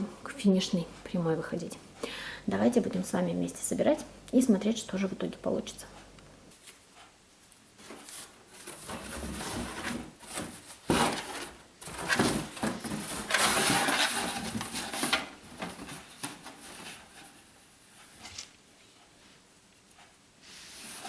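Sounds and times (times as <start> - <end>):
cardboard rustling and scraping: 7.8 - 18.5, 20.5 - 21.0.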